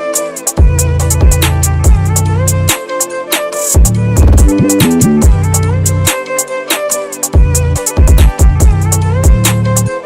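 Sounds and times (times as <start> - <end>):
bowed string melody: 0.0 - 10.0
beat with deep bass: 0.6 - 2.7, 3.8 - 6.1, 7.4 - 9.7.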